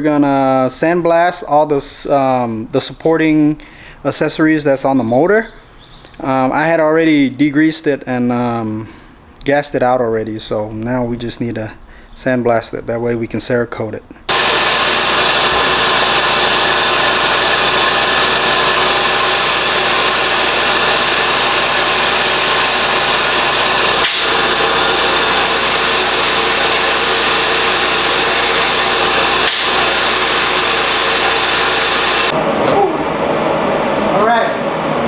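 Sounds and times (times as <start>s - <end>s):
sandblaster hissing: 14.3s - 32.4s.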